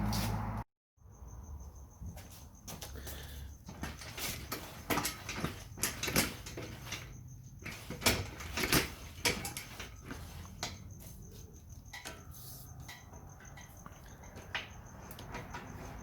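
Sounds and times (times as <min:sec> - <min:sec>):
knocks and clattering scrapes: 0:03.6 - 0:16.0.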